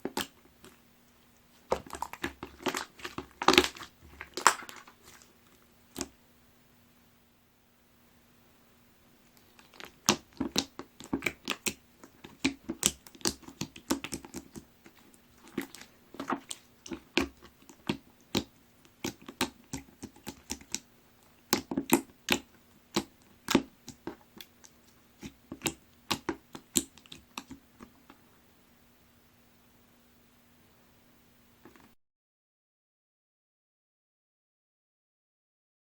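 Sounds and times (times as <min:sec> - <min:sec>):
slime clicking and popping: 0:01.7 - 0:05.2, 0:09.4 - 0:27.9.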